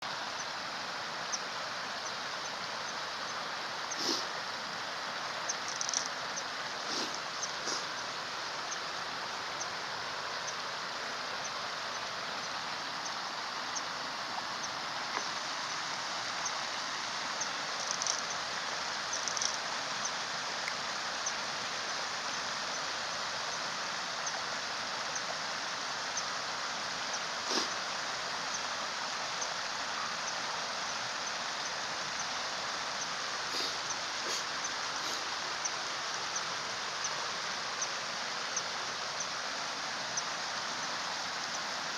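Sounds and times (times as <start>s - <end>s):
stream water flowing: 0.0s - 41.9s
faint high ticks: 5.5s - 8.9s, 17.4s - 18.4s, 19.0s - 21.4s, 24.2s - 24.5s.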